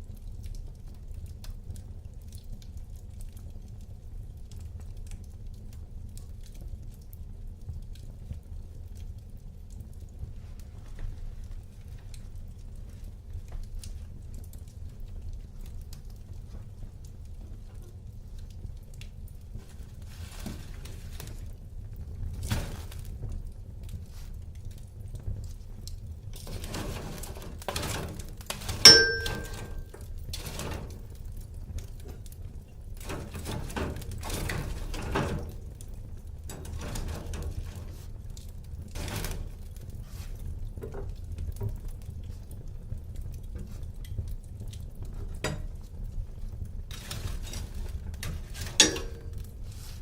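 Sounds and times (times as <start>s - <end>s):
fire popping: 0.0s - 50.0s
wood fire crackling: 0.0s - 50.0s
sharp ringing clink: 28.9s - 29.8s.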